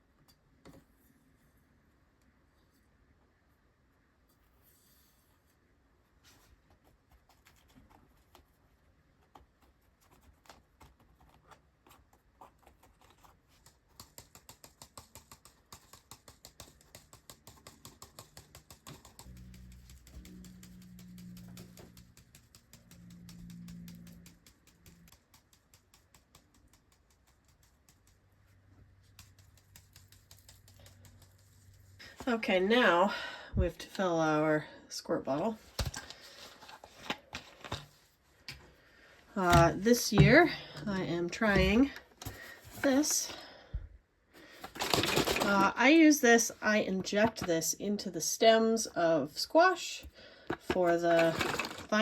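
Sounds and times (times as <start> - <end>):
vermiculite sprinkling ticks: 14.0 - 32.0.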